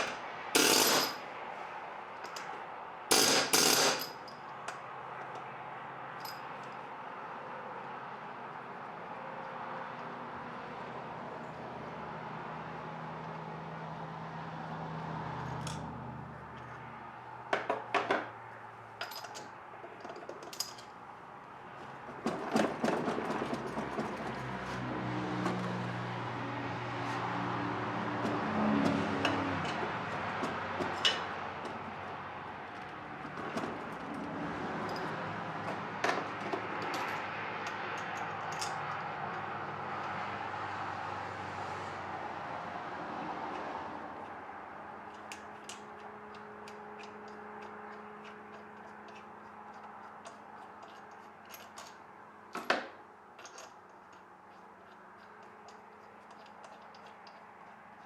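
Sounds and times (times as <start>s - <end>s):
hand tools clinking on metal: 0.0s - 1.3s, 2.2s - 4.5s, 19.0s - 21.0s, 29.2s - 31.8s, 45.1s - 52.8s, 53.4s - 57.8s.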